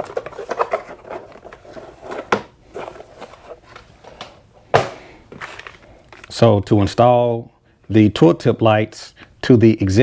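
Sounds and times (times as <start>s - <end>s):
packaging rustling and clicking: 0.0s - 6.4s.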